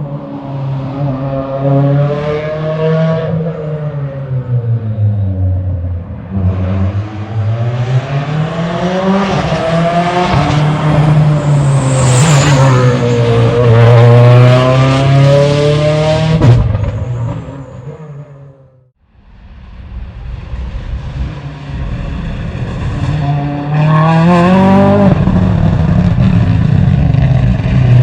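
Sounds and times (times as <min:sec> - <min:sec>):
rally car engine revving past: 0:06.4 - 0:17.4, 0:21.0 - 0:28.0.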